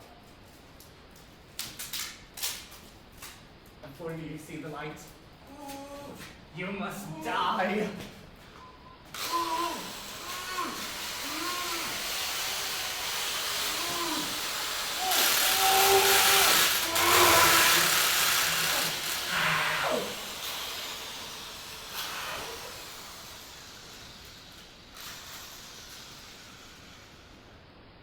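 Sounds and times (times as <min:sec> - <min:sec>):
hissing whirring power tool: 0:09.1 - 0:27.7.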